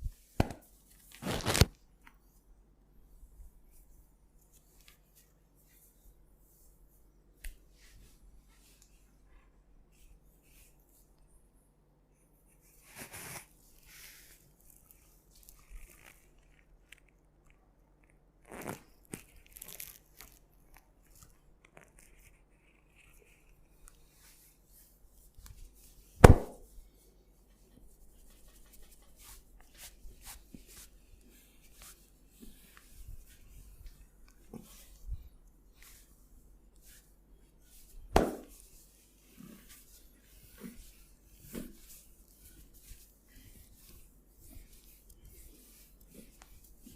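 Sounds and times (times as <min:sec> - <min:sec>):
hands rubbing hair and skin: 0:00.2 - 0:01.7, 0:27.5 - 0:46.9.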